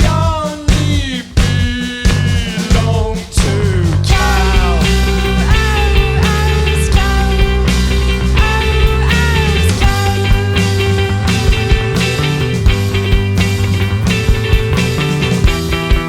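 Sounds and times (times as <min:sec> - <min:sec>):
bass line: 0:00.0 - 0:16.0
drums beating: 0:00.0 - 0:16.0
rock band playing: 0:00.0 - 0:16.0
sliding lead guitar notes: 0:04.1 - 0:16.0.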